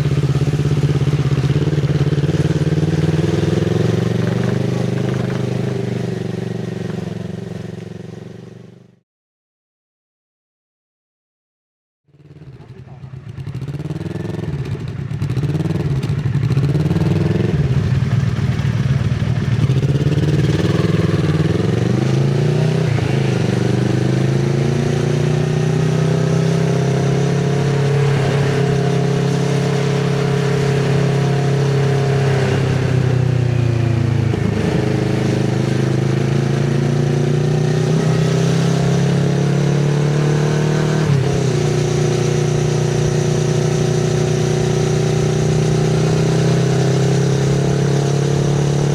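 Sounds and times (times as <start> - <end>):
gear changes: 0.0 - 7.2
motorcycle engine revving: 0.0 - 9.0, 12.1 - 48.9.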